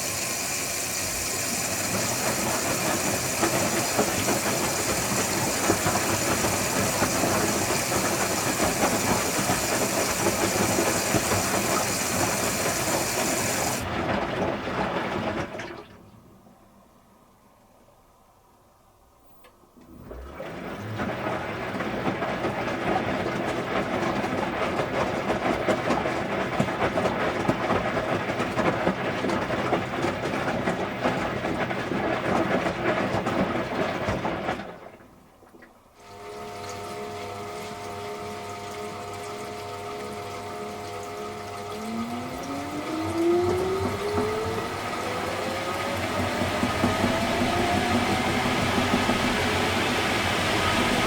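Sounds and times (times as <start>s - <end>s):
washing machine motor hum: 0.0s - 18.8s, 19.6s - 51.0s
rush of water: 41.2s - 51.0s.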